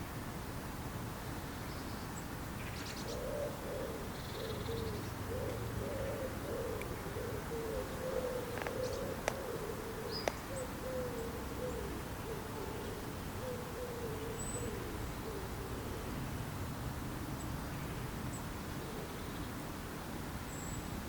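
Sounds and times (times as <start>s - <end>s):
steady outdoor hiss: 0.0s - 21.0s
bird cooing call: 2.8s - 16.2s, 18.8s - 19.3s.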